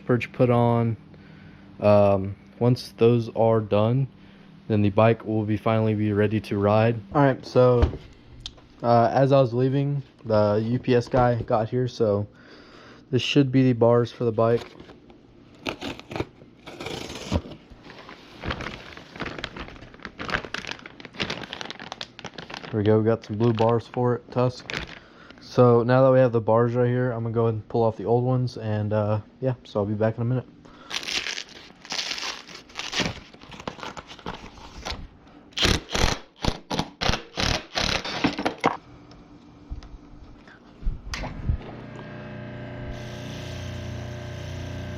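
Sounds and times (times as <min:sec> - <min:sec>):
scraping and crinkling handling: 0:14.1 - 0:25.5, 0:30.9 - 0:35.1
cardboard scraping and tearing: 0:15.6 - 0:22.6.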